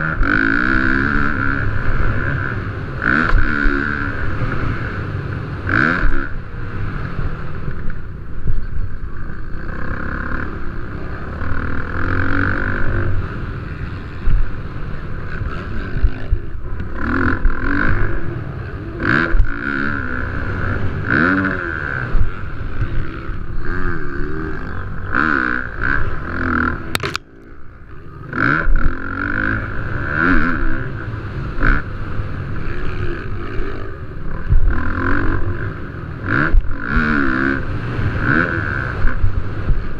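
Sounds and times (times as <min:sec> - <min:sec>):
dirt bike engines revving: 0:00.0 - 0:39.9.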